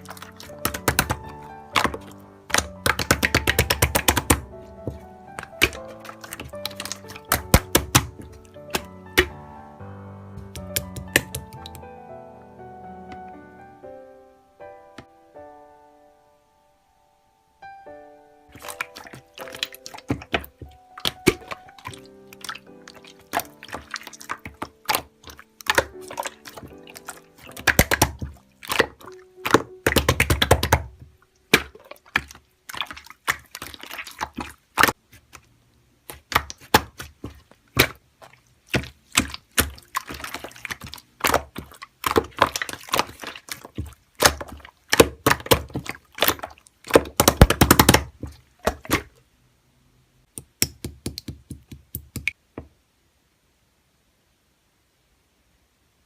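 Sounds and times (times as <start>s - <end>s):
slime squeezed by hand: 0.0s - 9.4s, 18.5s - 35.4s, 36.0s - 49.2s.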